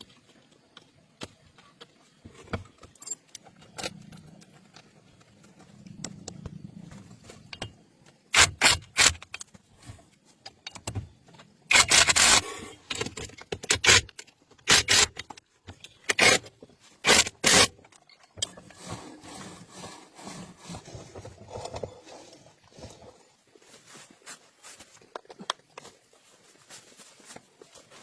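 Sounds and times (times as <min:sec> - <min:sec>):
sharp scraping strokes: 0:18.6 - 0:22.9.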